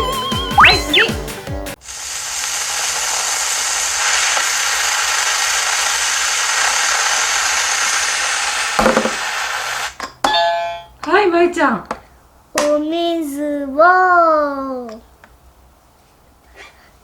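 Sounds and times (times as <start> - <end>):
firework spraying sparks hiss: 1.8 - 10.0.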